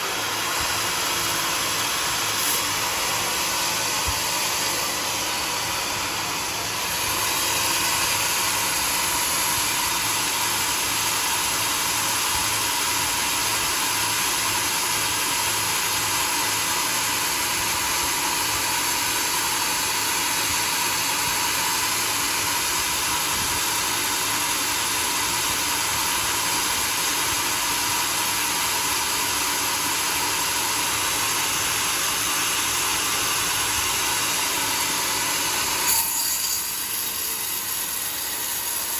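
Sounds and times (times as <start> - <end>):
sawmill cutting log: 0.0 - 38.9.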